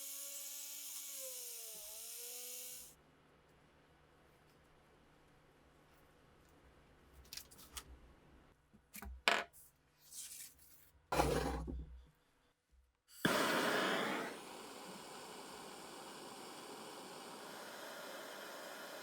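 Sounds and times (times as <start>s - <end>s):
loud hiss: 13.2s - 19.0s.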